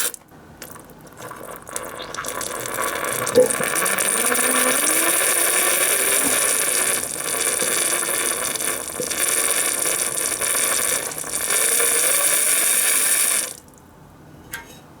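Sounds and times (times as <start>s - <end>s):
gas hissing: 0.0s - 13.7s
faint rising whistle: 3.3s - 6.5s.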